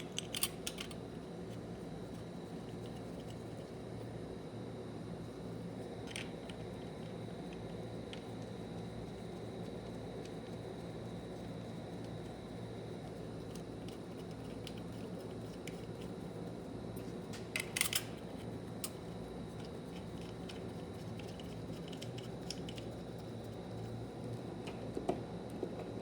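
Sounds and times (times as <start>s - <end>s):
small metal parts clicking: 0.0s - 1.0s, 17.4s - 18.2s
steady low hum: 0.0s - 26.0s.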